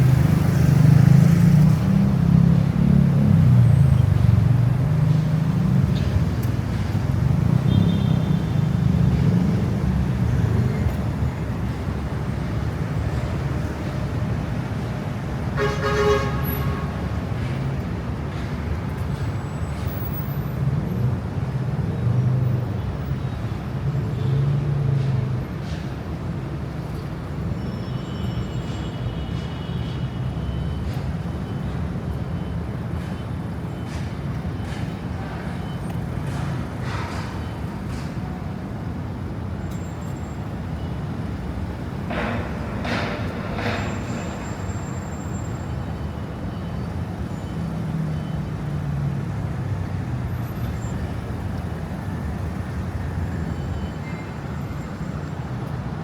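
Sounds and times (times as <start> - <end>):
traffic rumble: 0.0 - 27.7, 28.5 - 56.0
heavy engine passing: 41.4 - 46.4.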